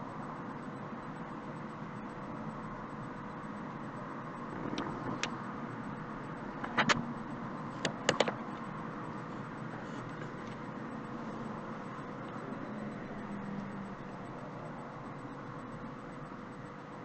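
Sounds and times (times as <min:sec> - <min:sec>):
steady background hiss: 0:00.0 - 0:17.0
sharp clicks: 0:07.8 - 0:08.4.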